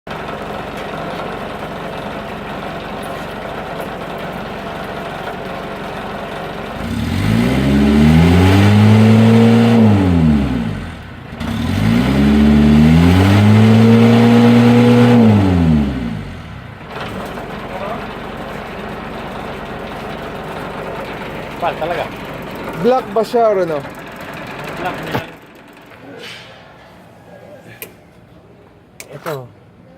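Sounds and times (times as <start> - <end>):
diesel engine idling and revving: 0.1 - 25.9.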